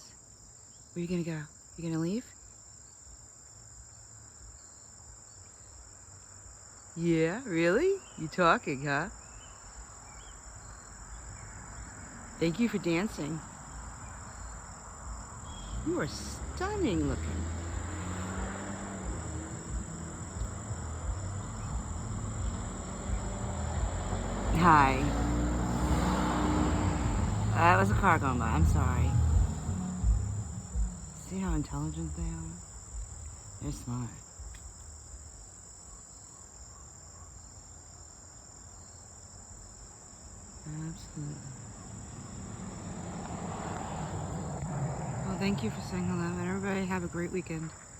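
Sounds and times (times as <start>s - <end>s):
high-pitched insect trill: 0.0s - 47.9s
low rumble: 16.5s - 26.0s, 26.7s - 34.8s.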